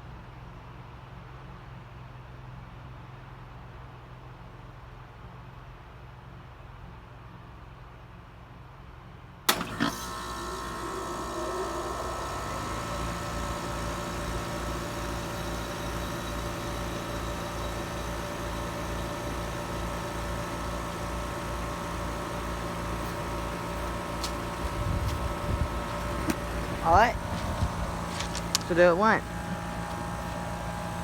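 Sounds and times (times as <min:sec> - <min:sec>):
heat pump click and clunk: 0:09.5 - 0:17.6, 0:22.2 - 0:31.0
heat pump running hum: 0:09.5 - 0:31.0.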